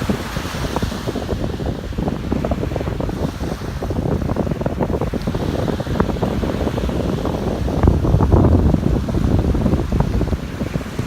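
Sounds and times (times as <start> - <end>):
ocean waves washing on beach: 0.0 - 11.0
wind buffeting microphone: 0.0 - 11.0.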